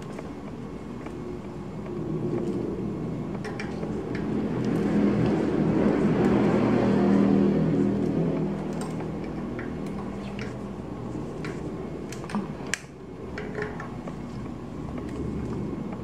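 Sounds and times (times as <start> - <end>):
low background hum: 0.0 - 16.0
metallic clicks of bicycle parts: 8.0 - 10.7, 11.4 - 14.2.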